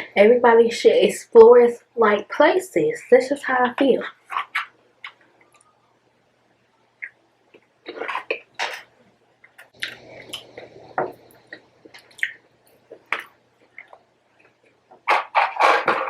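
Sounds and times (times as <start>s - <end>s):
chewing and wet mouth noises: 9.4s - 14.8s.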